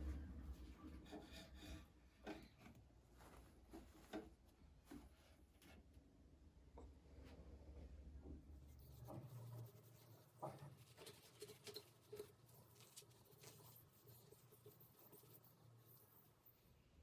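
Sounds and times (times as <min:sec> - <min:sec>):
faint taps and rustles: 0:02.1 - 0:06.0, 0:08.2 - 0:13.8.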